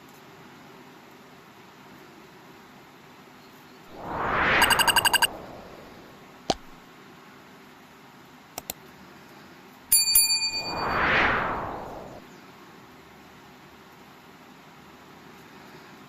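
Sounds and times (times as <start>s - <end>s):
whoosh: 3.9s - 6.8s, 10.6s - 12.2s
trilled bell-like ring: 9.9s - 10.6s.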